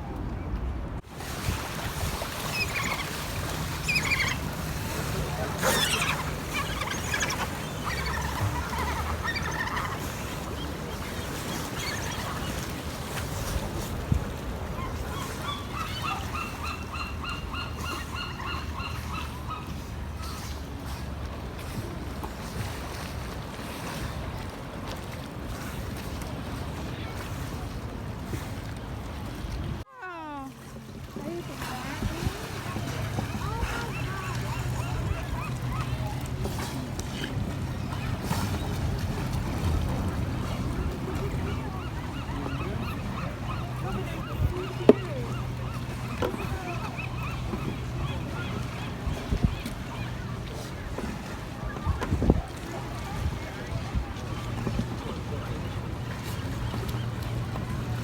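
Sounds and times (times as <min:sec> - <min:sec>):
surf: 0:00.0 - 0:58.0
wind: 0:00.0 - 0:58.0
sea lions barking: 0:01.6 - 0:21.1, 0:30.0 - 0:58.0
bird calling: 0:02.3 - 0:13.2, 0:14.8 - 0:20.5, 0:31.7 - 0:50.6.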